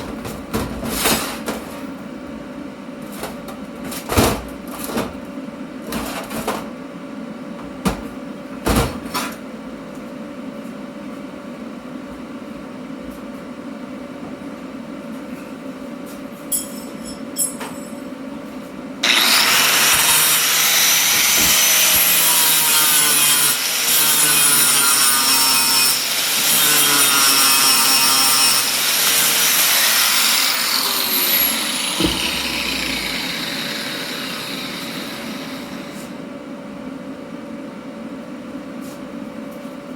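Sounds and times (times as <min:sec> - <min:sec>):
angle grinder whining: 0:19.0 - 0:36.2.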